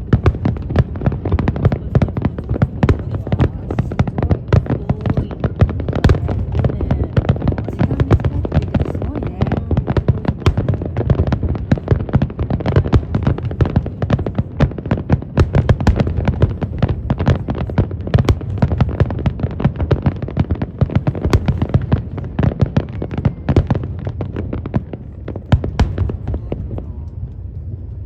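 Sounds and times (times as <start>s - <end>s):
fireworks bangs and crackles: 0.0s - 28.0s
deep rumble: 23.9s - 28.0s.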